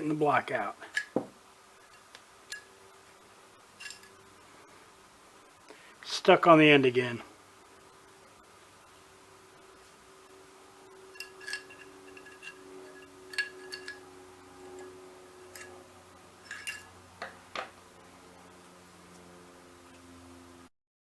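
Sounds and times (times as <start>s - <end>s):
small steel parts clinking: 0.8s - 1.2s, 1.8s - 2.8s, 3.8s - 4.2s, 11.1s - 14.1s, 14.7s - 15.8s, 16.4s - 17.0s.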